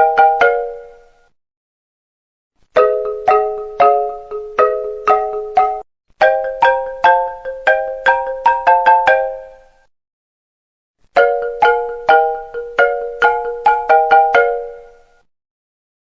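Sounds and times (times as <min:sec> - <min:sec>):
phone ringtone melody: 0:02.8 - 0:09.8, 0:11.2 - 0:15.1.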